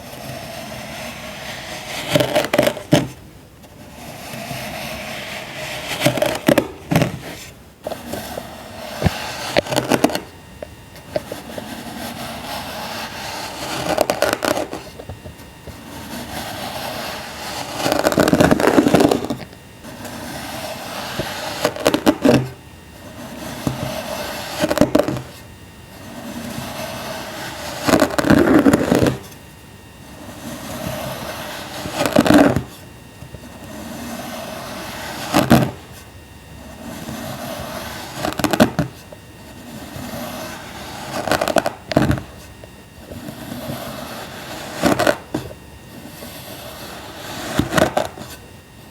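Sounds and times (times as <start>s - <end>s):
tool cutting packed sand: 0.0s - 3.2s, 3.8s - 10.3s, 11.1s - 15.0s, 15.7s - 29.2s, 30.1s - 32.8s, 33.6s - 35.8s, 36.8s - 39.0s, 39.6s - 42.5s, 43.2s - 48.4s
gritty scraping: 3.8s - 22.4s.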